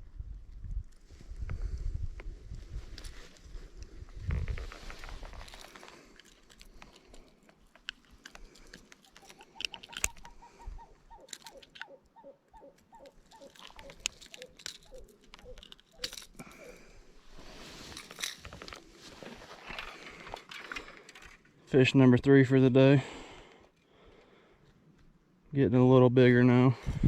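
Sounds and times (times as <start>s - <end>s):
handling clicks and rustles: 2.8s - 21.6s.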